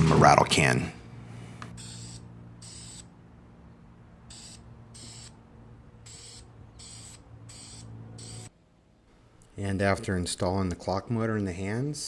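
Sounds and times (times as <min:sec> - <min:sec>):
spray paint can spraying: 0:01.8 - 0:03.1, 0:04.3 - 0:05.4, 0:06.0 - 0:08.5.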